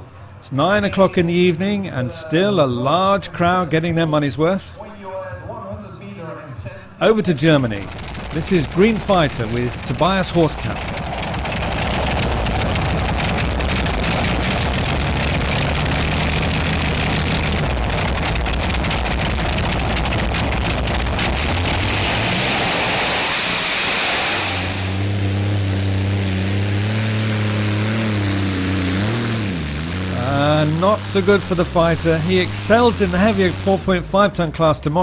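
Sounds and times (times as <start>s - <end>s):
tractor engine at full power: 7.3s - 35.0s
crackling exhaust: 7.4s - 35.0s.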